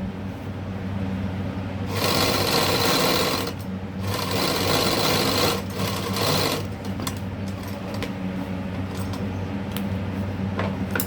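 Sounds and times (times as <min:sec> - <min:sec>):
steady motor hum: 0:00.0 - 0:11.0
sewing machine stitching: 0:01.9 - 0:06.7.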